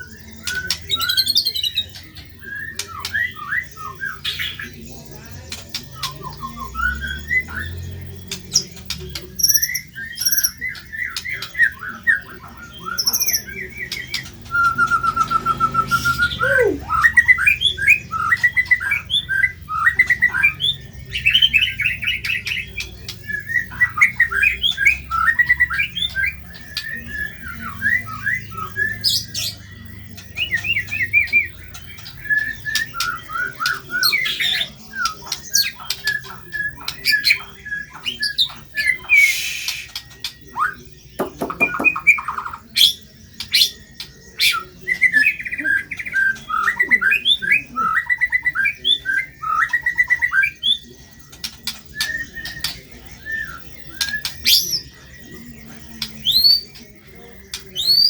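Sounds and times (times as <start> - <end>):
songbird singing whistles and trills: 0.0 - 58.0.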